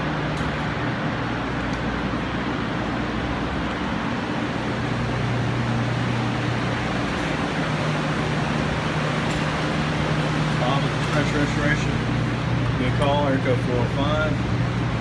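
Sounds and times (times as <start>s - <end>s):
air rushing from blowers: 0.0s - 15.0s
low motor hum: 0.0s - 15.0s.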